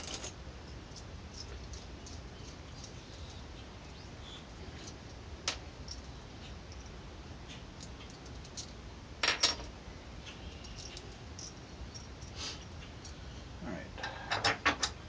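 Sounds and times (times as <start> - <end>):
small metal parts clinking: 0.0 - 3.4, 7.8 - 9.7, 10.5 - 12.3.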